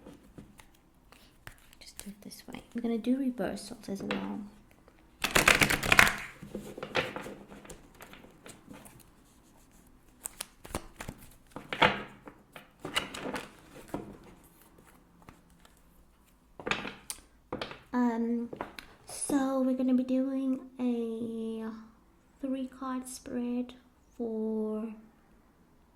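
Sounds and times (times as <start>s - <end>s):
cards being shuffled: 0.0s - 3.0s, 4.0s - 17.9s.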